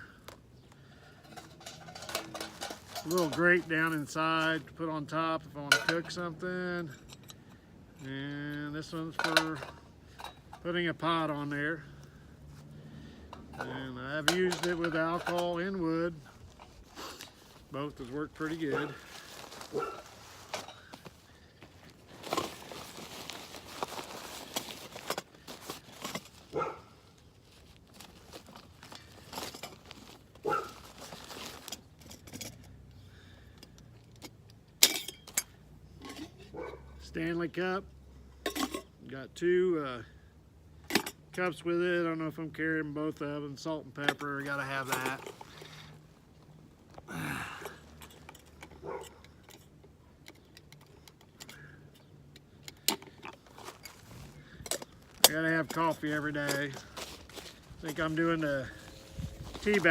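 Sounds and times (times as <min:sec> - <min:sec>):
camping gear clicking and tapping: 0:00.2 - 0:04.6, 0:12.1 - 0:32.9, 0:44.0 - 0:59.9
metal cookware clinking: 0:01.2 - 0:03.4, 0:34.8 - 0:36.4.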